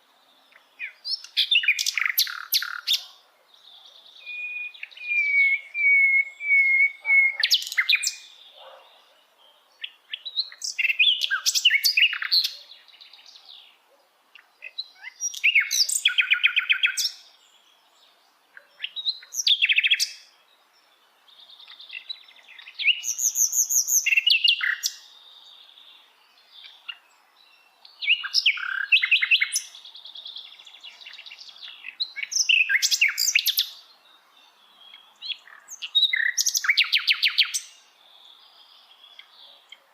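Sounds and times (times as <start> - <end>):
flycatcher singing: 4.2 - 13.5, 26.4 - 39.8.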